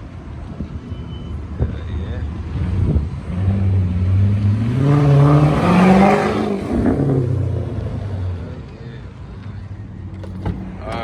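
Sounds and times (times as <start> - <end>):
loud car engine revving: 2.5 - 8.6.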